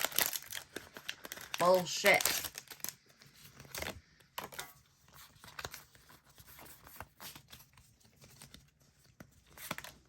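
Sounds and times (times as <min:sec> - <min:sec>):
foil wrapper crinkling: 0:00.0 - 0:04.7.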